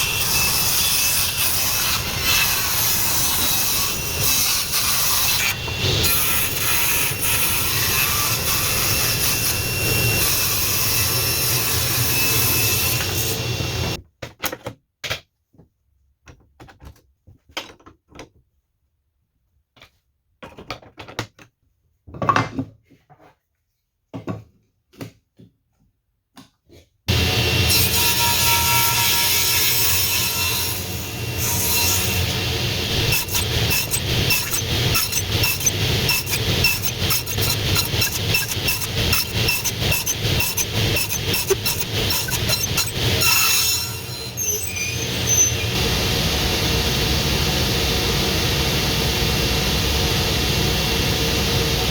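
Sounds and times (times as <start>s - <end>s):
power tool cutting wood: 0.0s - 14.0s, 27.1s - 51.9s.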